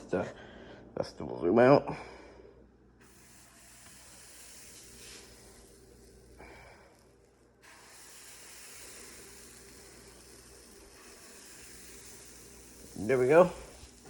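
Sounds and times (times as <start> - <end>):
batter sizzling in a pan: 3.0 - 14.0.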